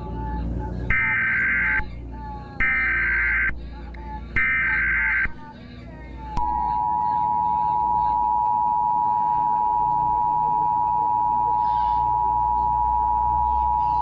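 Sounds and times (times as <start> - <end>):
two-tone alert signal: 6.4 - 14.0.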